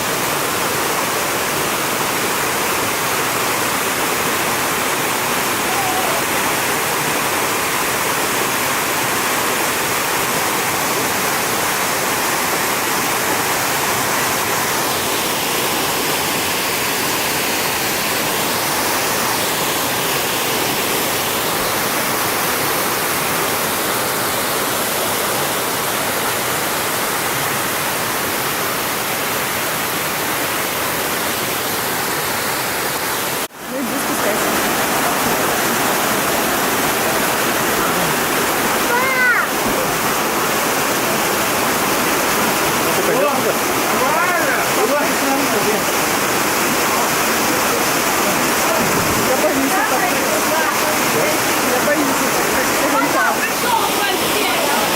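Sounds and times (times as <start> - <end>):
waterfall rushing: 0.0 - 54.9.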